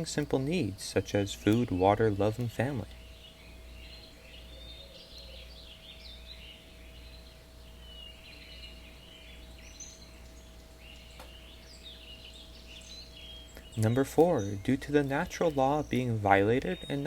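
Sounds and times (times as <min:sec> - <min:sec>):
birds chirping and twittering: 0:00.0 - 0:17.0
steady low hum: 0:00.0 - 0:17.0.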